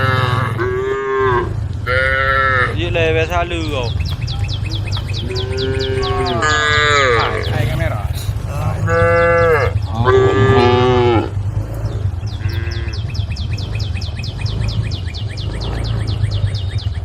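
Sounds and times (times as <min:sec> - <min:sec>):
cow mooing: 0:00.0 - 0:16.5
steady low hum: 0:00.0 - 0:17.0
fast high chirps: 0:02.8 - 0:10.2, 0:11.4 - 0:17.0.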